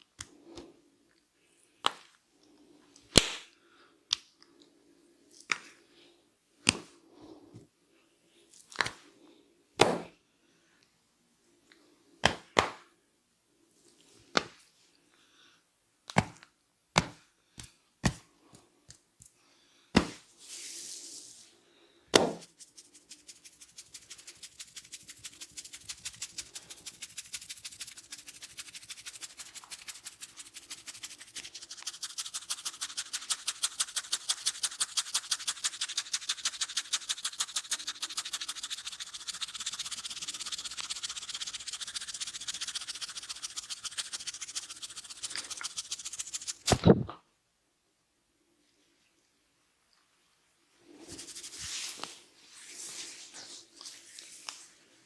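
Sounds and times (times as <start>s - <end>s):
hands smacking head: 3.2s - 3.4s, 46.6s - 47.1s
hissing rub: 22.4s - 47.0s, 51.0s - 52.2s
fast patter of hand taps: 23.1s - 46.8s.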